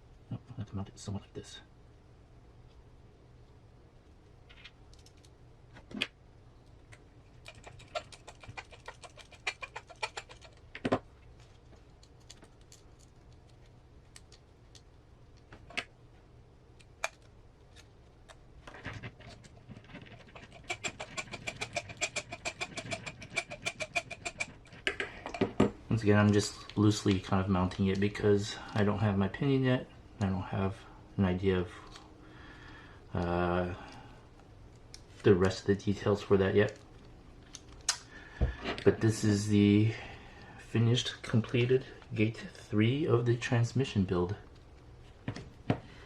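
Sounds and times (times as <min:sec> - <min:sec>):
hand tools clicking and tapping: 0:06.9 - 0:13.4, 0:19.2 - 0:25.8.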